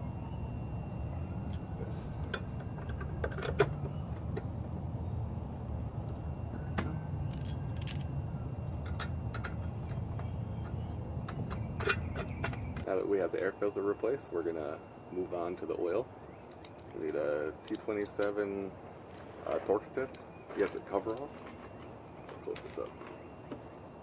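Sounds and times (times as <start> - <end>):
steady low rumble: 0.0 - 13.6
metal tools clinking: 7.0 - 9.9, 10.6 - 12.7, 16.5 - 18.5, 19.1 - 23.2.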